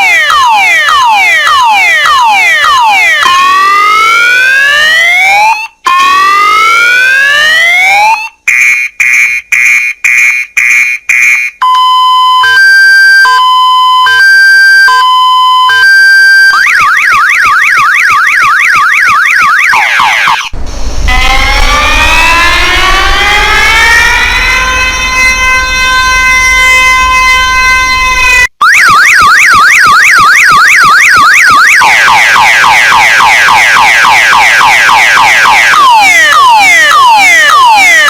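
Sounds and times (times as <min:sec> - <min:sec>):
car alarm siren: 0:00.0 - 0:38.0.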